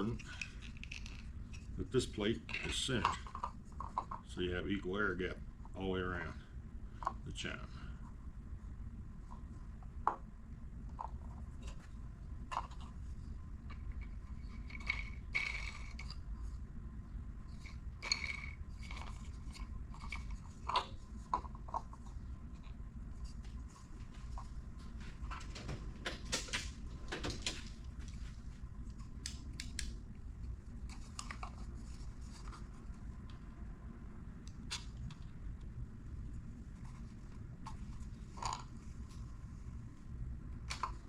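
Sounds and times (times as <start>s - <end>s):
plastic parts clicking and scraping: 0.0s - 1.8s
steady low hum: 0.0s - 41.0s.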